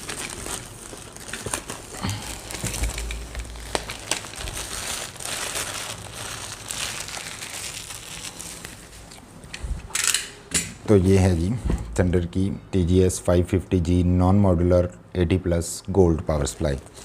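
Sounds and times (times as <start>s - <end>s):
packaging crinkling and rustling: 0.0s - 9.3s.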